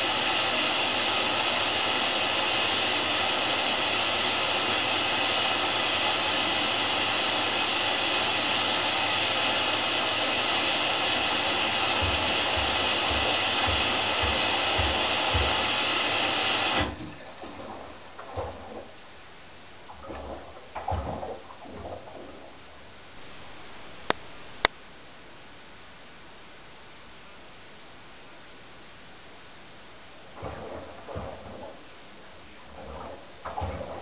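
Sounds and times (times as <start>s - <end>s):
washing machine filling with water: 0.0s - 19.2s, 19.8s - 22.9s, 30.2s - 34.0s
faint low thuds: 12.0s - 15.8s.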